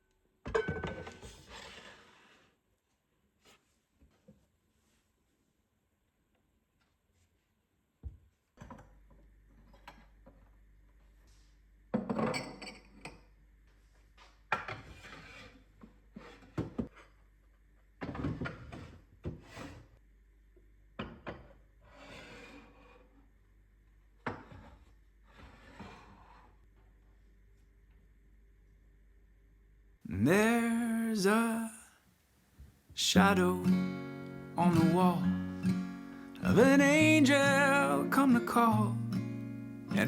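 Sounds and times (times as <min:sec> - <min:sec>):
kitchenware knocking and clinking: 0:00.4 - 0:01.3, 0:12.0 - 0:13.3.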